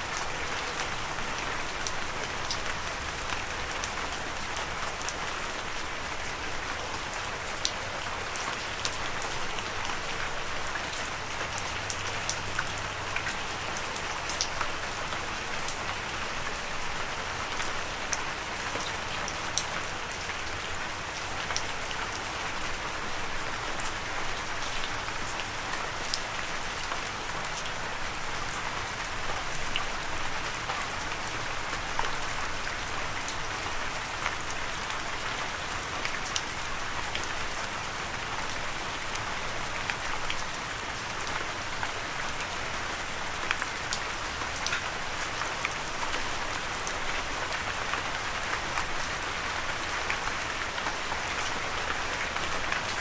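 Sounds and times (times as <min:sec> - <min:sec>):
steady rain falling: 0:00.0 - 0:53.0.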